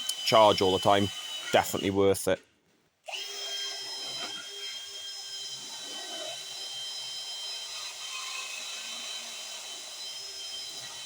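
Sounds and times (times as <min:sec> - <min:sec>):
drill grinding with burr cutter: 0:00.0 - 0:02.1, 0:03.1 - 0:11.0.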